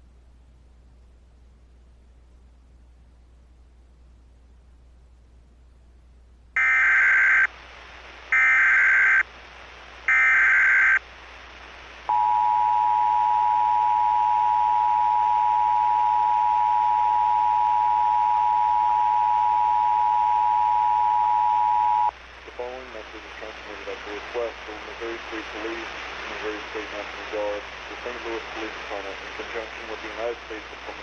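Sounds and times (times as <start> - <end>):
data tone bursts: 6.6 - 7.5, 8.4 - 9.2, 10.1 - 11.0, 12.1 - 22.1
two-tone attention signal: 12.1 - 22.1.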